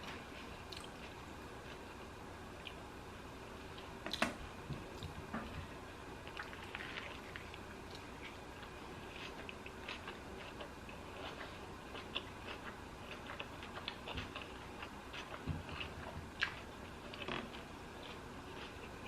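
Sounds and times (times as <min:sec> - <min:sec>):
chewing with wet mouth clicks: 0:00.7 - 0:01.8, 0:06.2 - 0:19.0.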